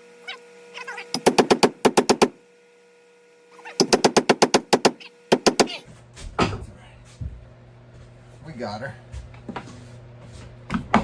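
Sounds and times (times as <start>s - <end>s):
rapid wood and metal blows: 3.8s - 5.8s.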